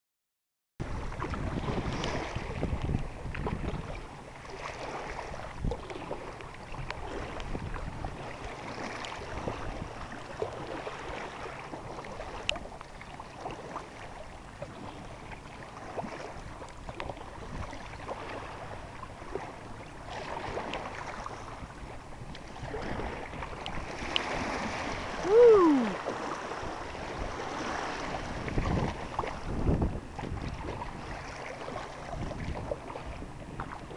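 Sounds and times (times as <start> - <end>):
paddle splashes: 0.8 - 33.9
water sloshing: 0.8 - 33.9
wind noise on microphone: 0.8 - 33.9.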